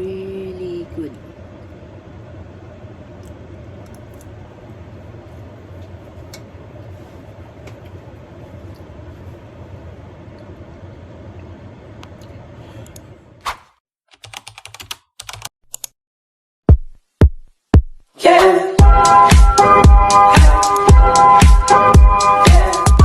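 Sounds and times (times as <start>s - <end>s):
low background rumble and hiss: 0.0s - 13.4s.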